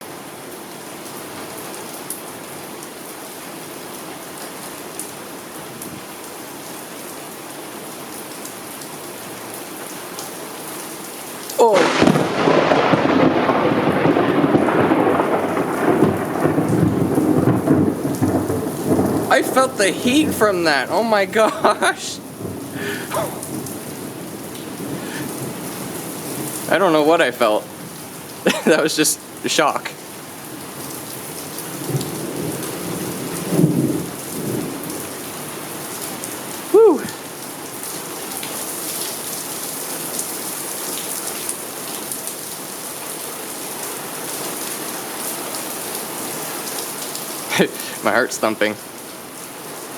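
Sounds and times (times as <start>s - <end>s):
rain falling: 0.0s - 49.9s
thunder rumbling: 11.6s - 26.8s.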